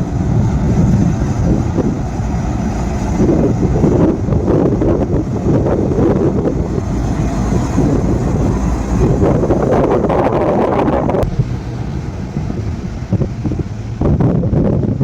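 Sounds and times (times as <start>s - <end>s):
locomotive rumbling: 0.0s - 15.0s
wind buffeting microphone: 0.0s - 15.0s.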